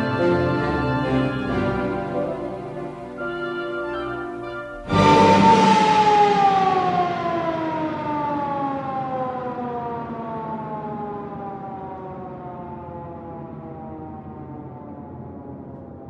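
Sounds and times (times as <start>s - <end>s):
loud tone sliding down in pitch: 0.0s - 9.4s.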